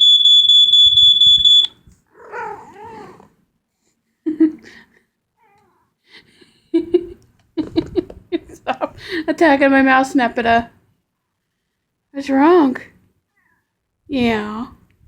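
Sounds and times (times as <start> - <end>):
smoke alarm beep: 0.0 - 1.8.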